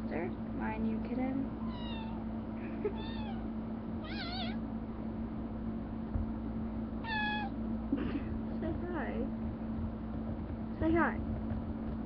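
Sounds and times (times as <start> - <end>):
kitten meowing: 1.6 - 2.2, 2.9 - 3.4, 4.0 - 4.6, 7.0 - 7.6.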